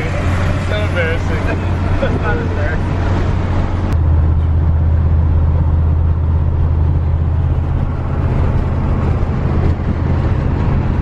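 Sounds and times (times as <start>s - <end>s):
engine drone in vehicle cabin: 0.0s - 11.0s.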